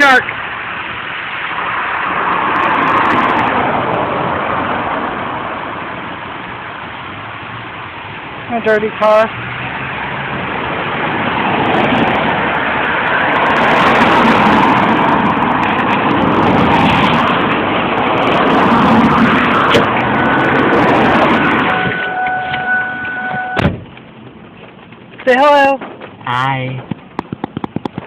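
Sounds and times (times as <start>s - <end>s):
heavy rain: 0.0s - 22.6s
traffic on a wet road: 0.0s - 28.0s
two-note electronic tone: 21.4s - 23.6s.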